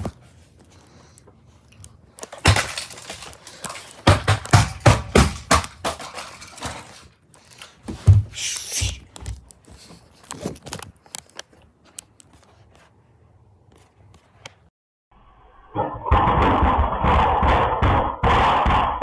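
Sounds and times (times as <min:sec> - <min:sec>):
plastic knocks and clatters: 0:02.2 - 0:11.6.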